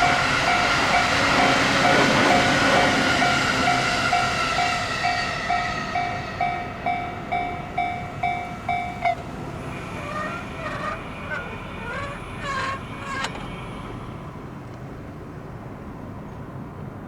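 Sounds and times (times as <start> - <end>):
level-crossing two-tone bell: 0.0 - 9.7
passing train: 0.0 - 17.0.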